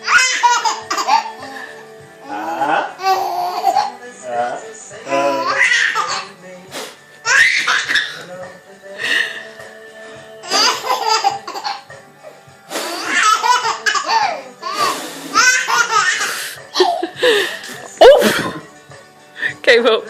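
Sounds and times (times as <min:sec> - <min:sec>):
baby laughing: 0:00.0 - 0:01.4, 0:02.7 - 0:04.1, 0:05.3 - 0:06.3, 0:07.2 - 0:08.2, 0:10.4 - 0:18.6.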